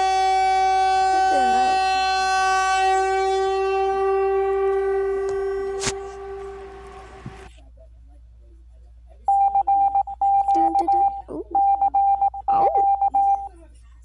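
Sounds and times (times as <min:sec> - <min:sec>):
rapid high-pitched alert beeps: 0:09.3 - 0:13.5.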